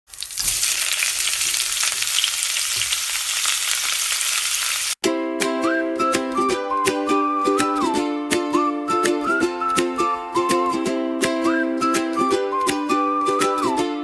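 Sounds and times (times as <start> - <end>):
crackling sizzling hiss: 0.1 - 5.0
plucked-string background music: 5.0 - 14.0.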